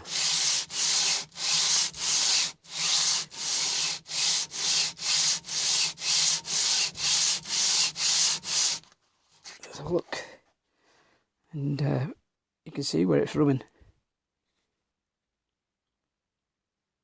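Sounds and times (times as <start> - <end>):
metal plane rasping on sandpaper: 0.0 - 8.9.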